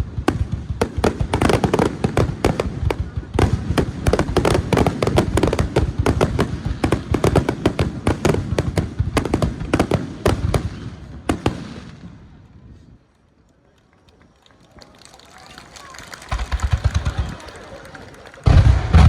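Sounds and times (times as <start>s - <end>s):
fireworks bangs: 0.0s - 12.8s, 15.0s - 19.0s.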